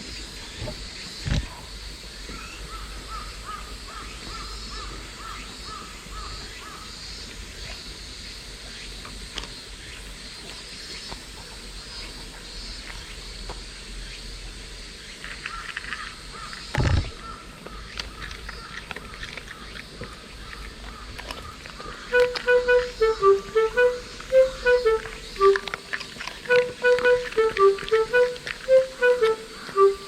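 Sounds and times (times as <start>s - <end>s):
bird chirping: 22.0s - 30.0s
high buzzing hiss: 22.0s - 30.0s.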